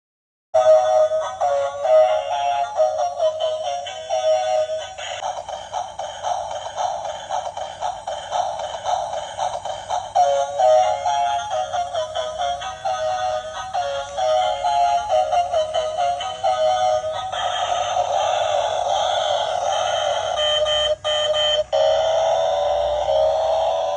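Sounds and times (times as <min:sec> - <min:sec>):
tinny electronic music: 0:00.6 - 0:23.9.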